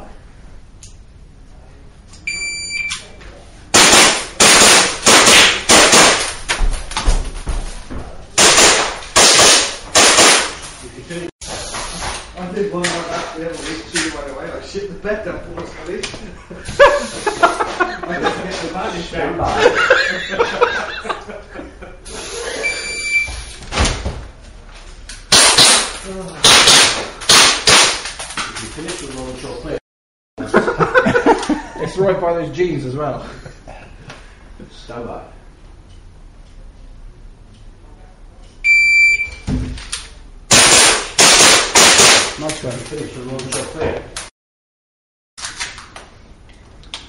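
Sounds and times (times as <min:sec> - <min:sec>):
shot timer beep: 0:02.3 - 0:03.0, 0:22.7 - 0:23.3, 0:38.7 - 0:39.4
pistol shots indoors: 0:03.7 - 0:06.4, 0:08.4 - 0:10.6, 0:25.3 - 0:28.1, 0:40.5 - 0:42.4
pistol shots: 0:03.8 - 0:06.3, 0:08.4 - 0:10.6.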